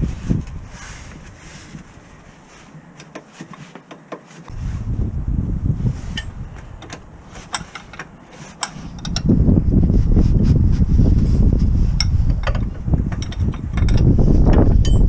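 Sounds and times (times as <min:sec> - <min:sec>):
low rumble: 0:04.5 - 0:07.3, 0:09.0 - 0:15.0
light metallic clicks and knocks: 0:06.2 - 0:09.3, 0:12.0 - 0:15.0.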